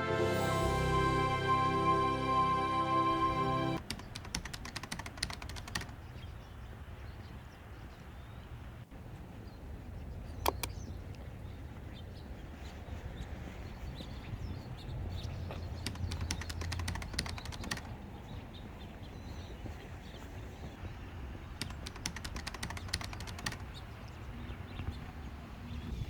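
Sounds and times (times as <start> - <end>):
low hum: 0.0 - 3.8
sharp clicks: 3.8 - 6.0, 10.4 - 11.2, 15.7 - 18.0, 21.6 - 23.8.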